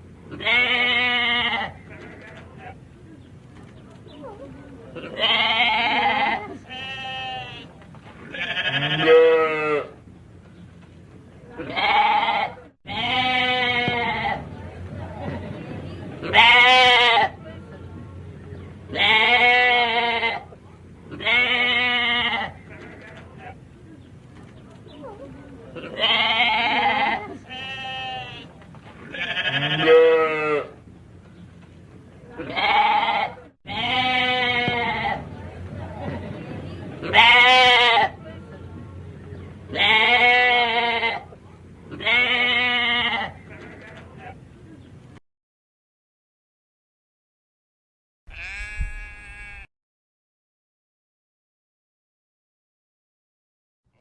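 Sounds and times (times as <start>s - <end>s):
sheep bleating: 5.0s - 7.7s, 8.3s - 9.9s, 11.6s - 14.4s, 25.9s - 28.5s, 29.1s - 30.7s, 32.4s - 35.2s, 48.3s - 49.7s.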